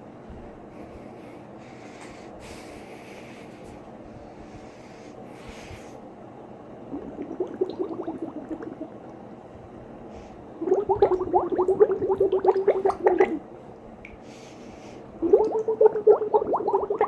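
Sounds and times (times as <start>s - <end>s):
person gurgling: 6.9s - 8.9s, 10.6s - 13.4s, 15.2s - 17.0s.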